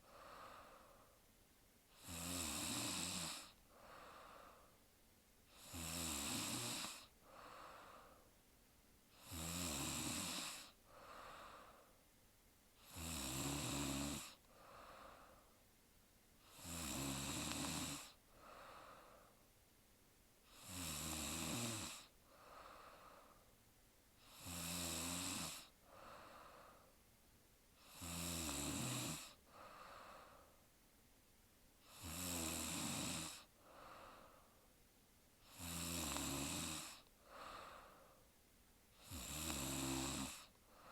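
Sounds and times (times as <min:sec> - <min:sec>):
soft breath: 0:00.0 - 0:01.3, 0:03.4 - 0:04.9, 0:06.9 - 0:08.4, 0:10.6 - 0:12.1, 0:14.3 - 0:15.7, 0:17.6 - 0:19.6, 0:22.0 - 0:23.6, 0:25.6 - 0:27.1, 0:29.3 - 0:30.8, 0:33.3 - 0:34.8, 0:36.9 - 0:39.2, 0:40.2 - 0:40.9
woman snoring: 0:01.9 - 0:04.7, 0:05.5 - 0:08.2, 0:09.2 - 0:11.8, 0:12.8 - 0:15.4, 0:16.4 - 0:19.1, 0:20.5 - 0:23.3, 0:24.2 - 0:26.9, 0:27.8 - 0:30.5, 0:31.8 - 0:34.4, 0:35.4 - 0:38.2, 0:38.9 - 0:40.9.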